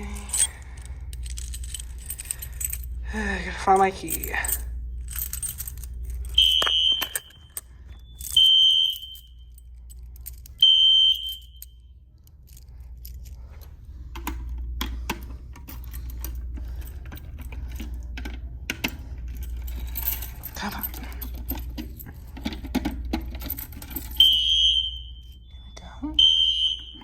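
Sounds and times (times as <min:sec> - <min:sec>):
keys jangling and clicking: 0:00.0 - 0:25.4
fire alarm high beeps: 0:06.4 - 0:09.5, 0:10.6 - 0:11.8, 0:24.2 - 0:27.0.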